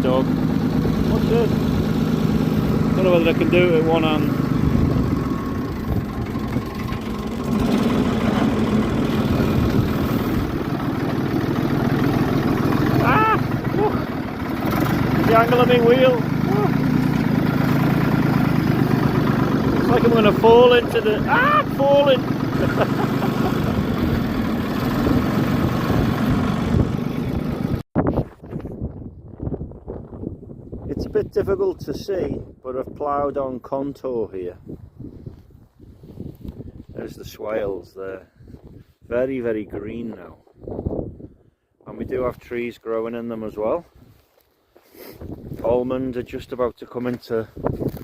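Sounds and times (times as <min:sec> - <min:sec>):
tractor engine running: 0:00.0 - 0:27.8.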